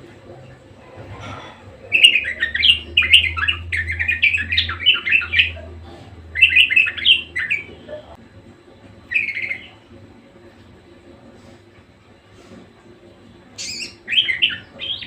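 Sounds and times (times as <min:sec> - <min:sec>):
budgerigar warbling and chirping: 0:01.9 - 0:05.7, 0:06.4 - 0:07.8, 0:13.6 - 0:15.0.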